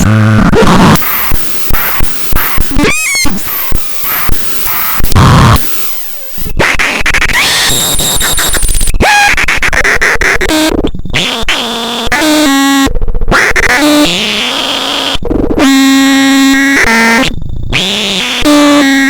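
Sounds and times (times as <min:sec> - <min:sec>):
dense crackle and clicks: 0:00.0 - 0:09.2
synthesizer buzzing tones: 0:00.0 - 0:19.0.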